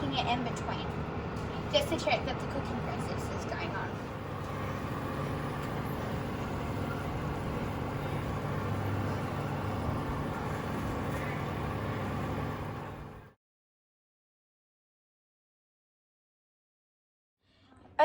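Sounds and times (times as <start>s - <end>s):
kitchen fan whirring: 0.0s - 13.4s.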